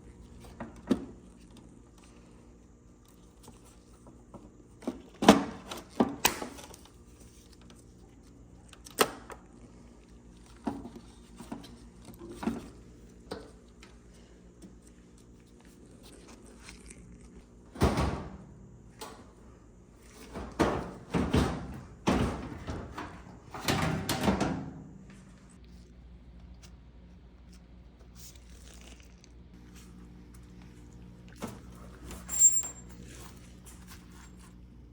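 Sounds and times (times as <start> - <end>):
metal panels knocking and clunking: 20.3 - 24.8.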